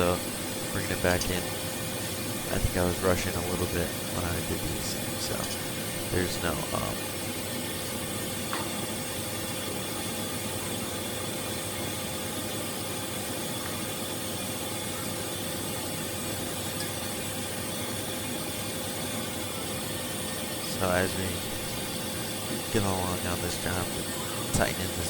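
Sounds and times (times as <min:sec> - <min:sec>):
machinery hiss: 0:00.0 - 0:08.5, 0:19.8 - 0:25.0
constant machinery hum: 0:00.0 - 0:25.0.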